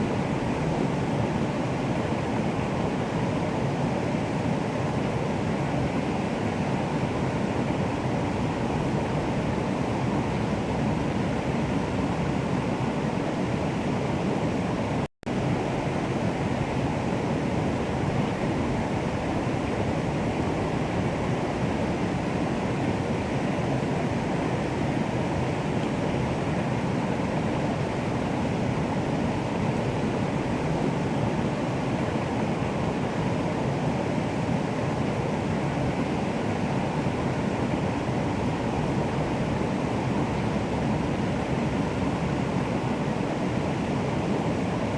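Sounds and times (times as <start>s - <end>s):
water rushing: 0.0s - 44.9s.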